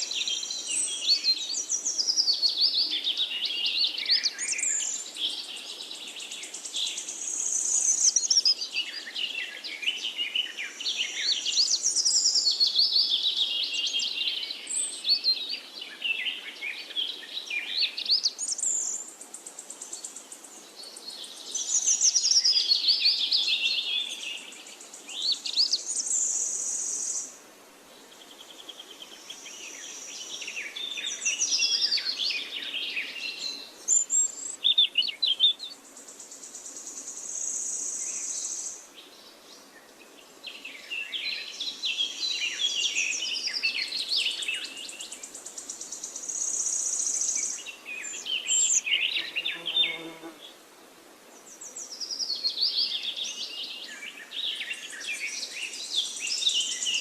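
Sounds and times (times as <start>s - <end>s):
birds chirping and whistling: 46.8s - 49.7s.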